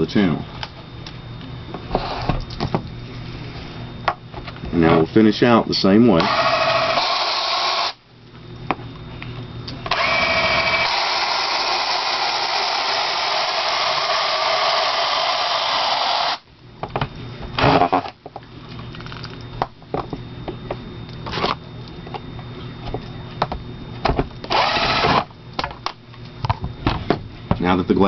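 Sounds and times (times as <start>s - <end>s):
cordless drill running: 6.2s - 8.0s, 9.9s - 16.4s, 24.5s - 25.3s.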